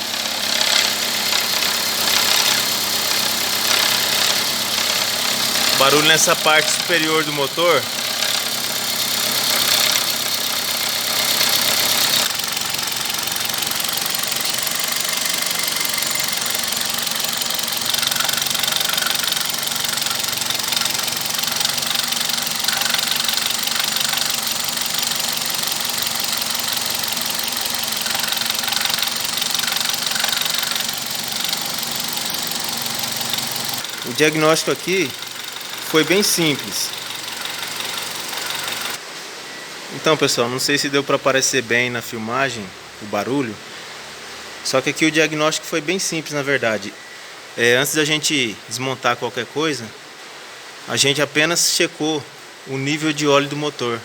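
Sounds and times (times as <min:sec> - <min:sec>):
car engine idling: 0:00.0 - 0:39.0
rapid engine ticking knock: 0:00.0 - 0:39.0.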